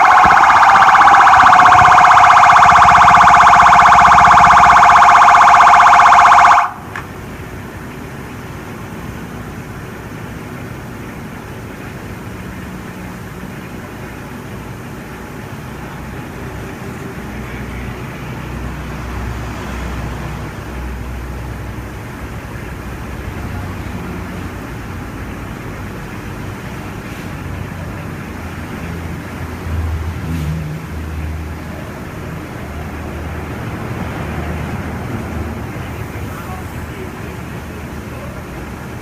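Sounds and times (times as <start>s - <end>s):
emergency vehicle siren: 0.0s - 8.0s
low rumble of traffic: 0.0s - 39.0s.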